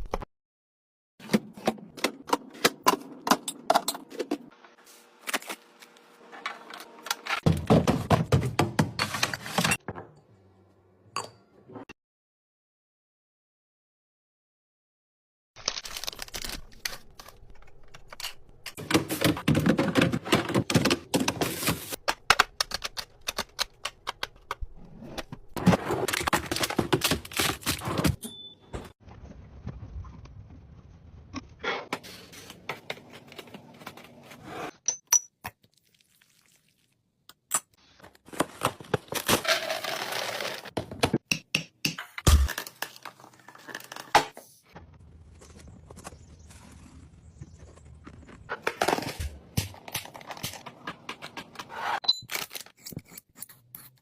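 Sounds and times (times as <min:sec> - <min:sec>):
packaging clicks and crinkling: 0:15.6 - 0:18.8.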